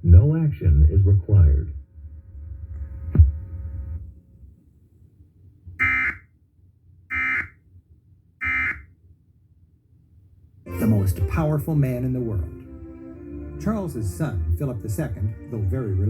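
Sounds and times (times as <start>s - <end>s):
low hum: 0.0s - 4.6s.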